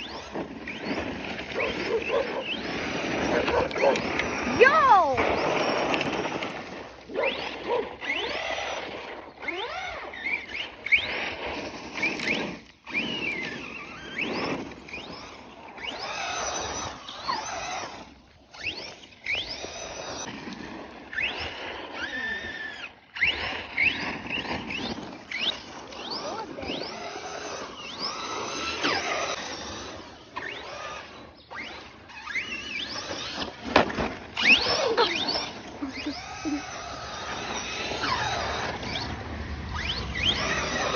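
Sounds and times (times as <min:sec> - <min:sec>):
toy car tires squealing: 0:00.0 - 0:40.9.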